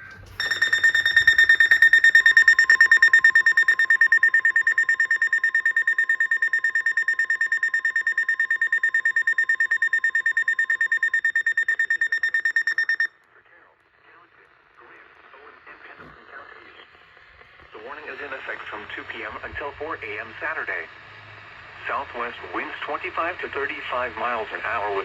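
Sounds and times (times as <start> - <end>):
high alert alarm beeping: 0.0 - 13.1
lower steady alarm tone: 0.0 - 13.1.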